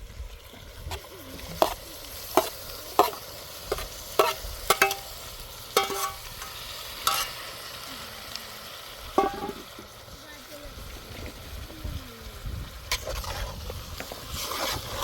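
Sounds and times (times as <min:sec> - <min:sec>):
hard objects knocking with ring: 0:09.2 - 0:09.6.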